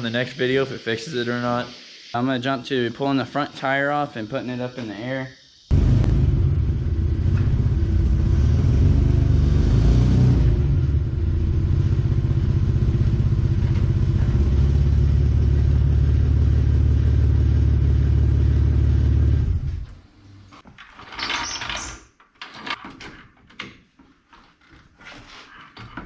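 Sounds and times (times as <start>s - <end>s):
car engine running: 5.7s - 19.8s.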